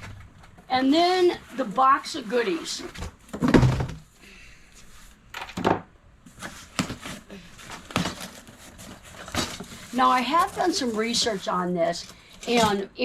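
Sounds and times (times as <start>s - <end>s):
rustling: 6.2s - 12.8s.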